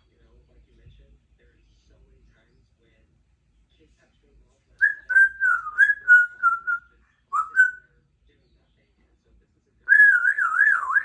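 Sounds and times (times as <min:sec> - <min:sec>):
parrot whistling: 0:04.8 - 0:07.9, 0:09.9 - 0:11.0.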